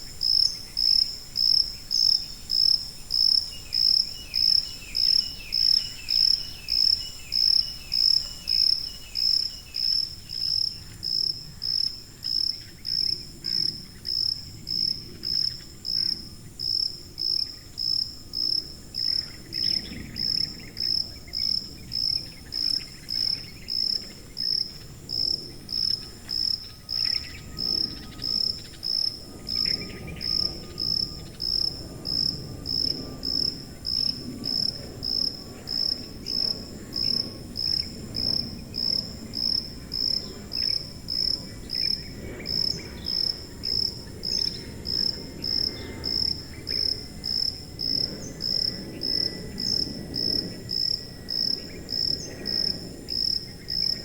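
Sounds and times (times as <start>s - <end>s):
faint lower-pitched chirping: 0.0s - 16.3s, 18.5s - 39.2s
cricket chirping: 0.0s - 54.0s.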